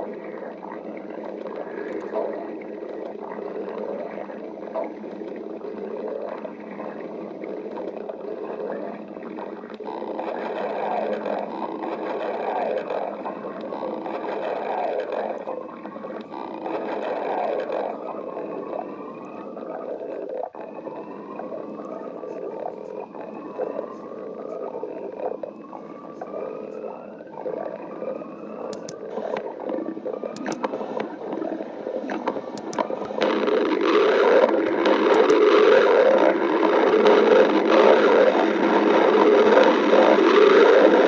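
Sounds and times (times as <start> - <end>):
stomach growling and gurgling: 0.0 - 41.0.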